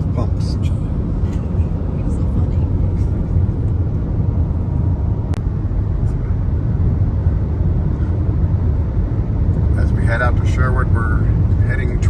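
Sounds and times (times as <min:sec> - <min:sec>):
road and engine rumble: 0:00.0 - 0:12.0.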